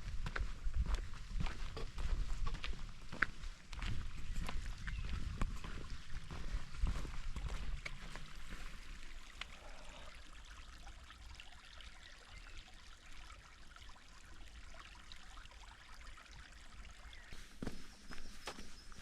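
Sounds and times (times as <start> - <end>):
wind rumble on microphone: 0.0 - 2.8, 3.7 - 8.2
trickle of running water: 1.8 - 19.0.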